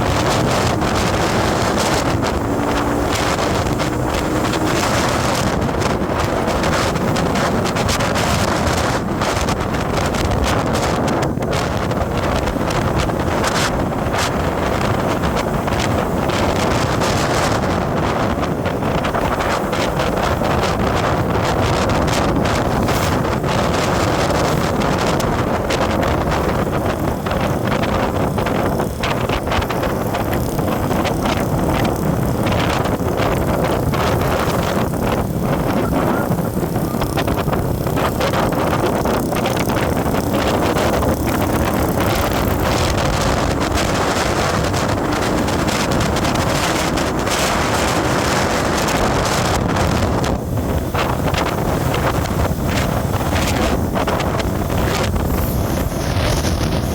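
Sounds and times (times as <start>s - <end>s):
vehicle noise: 0.0s - 56.9s
wind rushing over microphone: 0.0s - 56.9s.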